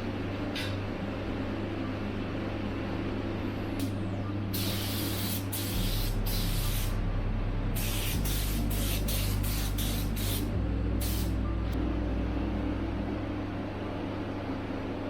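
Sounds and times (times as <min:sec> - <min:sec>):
steady low hum: 0:00.0 - 0:15.0
spray paint bursts: 0:04.6 - 0:07.0, 0:07.8 - 0:11.4.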